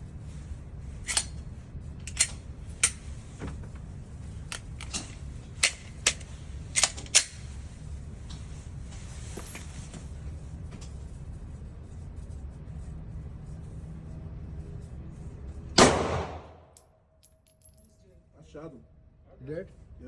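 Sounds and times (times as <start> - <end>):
steady low hum: 0.0 - 20.0
gunshots: 15.8 - 16.7.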